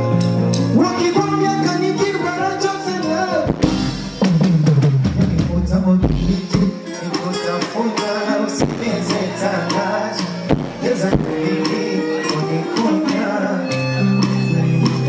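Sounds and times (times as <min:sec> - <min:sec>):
live band playing: 0:00.0 - 0:15.0
drum hits: 0:03.5 - 0:06.8, 0:08.6 - 0:13.2.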